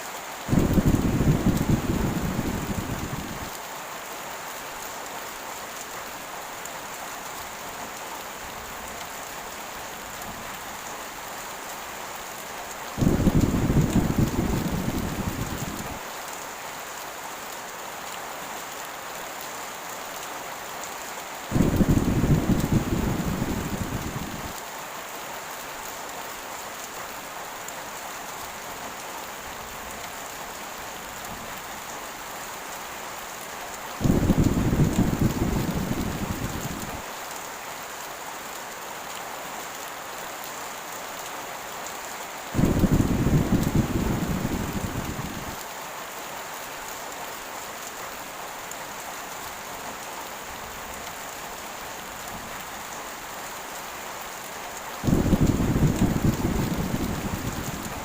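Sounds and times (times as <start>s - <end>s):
heavy rain: 0.0s - 58.0s
thunder rolling: 0.5s - 3.4s, 13.0s - 16.0s, 21.5s - 24.5s, 34.0s - 37.0s, 42.6s - 45.5s, 55.0s - 58.0s.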